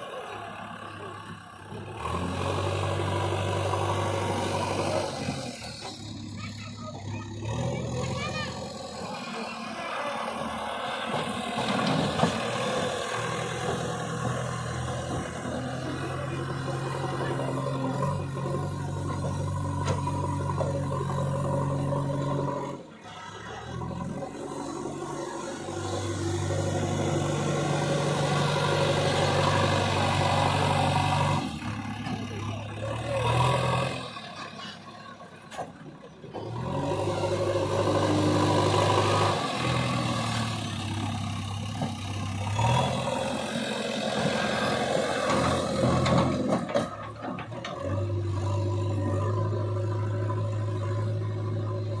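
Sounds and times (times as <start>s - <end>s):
backhoe diesel engine working: 0.0s - 52.0s.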